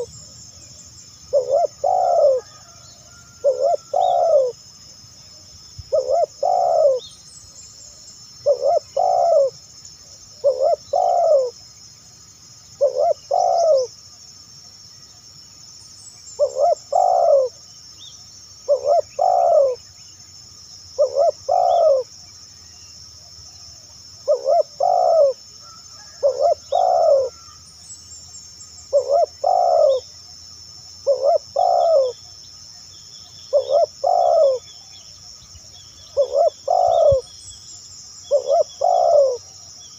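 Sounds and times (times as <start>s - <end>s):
dove cooing: 1.3s - 4.6s, 5.9s - 7.1s, 8.4s - 9.6s, 10.3s - 11.6s, 12.8s - 13.9s, 16.4s - 17.6s, 18.7s - 19.8s, 21.0s - 22.1s, 24.2s - 27.6s, 28.9s - 30.1s, 31.0s - 32.2s, 33.5s - 34.9s, 36.1s - 37.3s, 38.3s - 39.7s.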